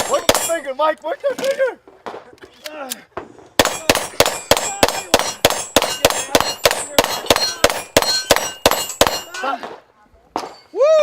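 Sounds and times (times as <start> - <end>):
rapid gunshots: 3.6 - 9.2
steel plate clanging: 3.6 - 9.6.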